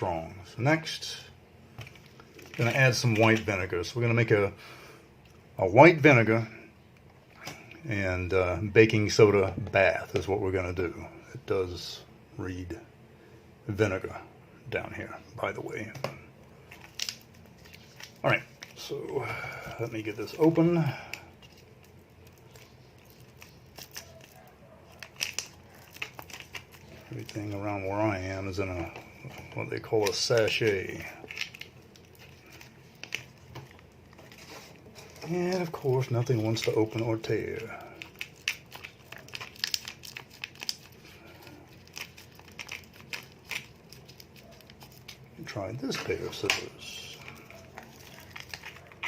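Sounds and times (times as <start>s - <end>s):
sachet packet crinkling: 16.6s - 49.0s.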